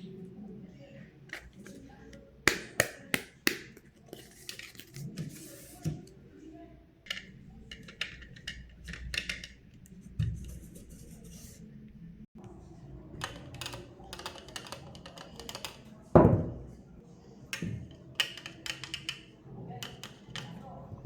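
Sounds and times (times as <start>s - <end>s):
plastic parts clicking and tapping: 7.1s - 10.0s, 13.2s - 15.9s, 17.6s - 20.8s.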